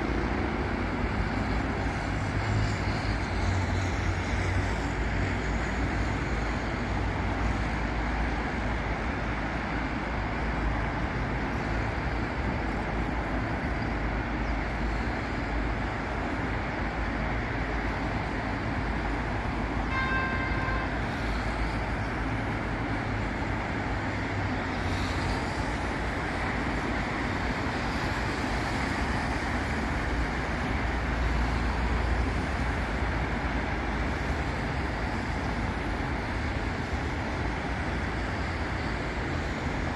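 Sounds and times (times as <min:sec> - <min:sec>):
heavy road traffic rumble: 0:00.0 - 0:39.9
car horn toot: 0:19.9 - 0:21.0.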